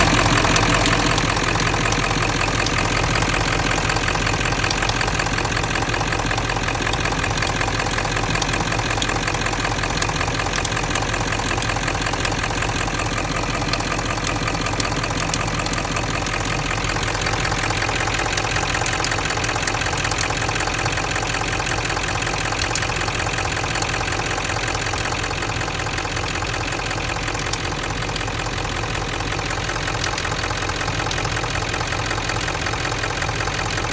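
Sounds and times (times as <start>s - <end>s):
metallic ticking: 0.0s - 20.4s
diesel engine idling: 0.0s - 33.9s.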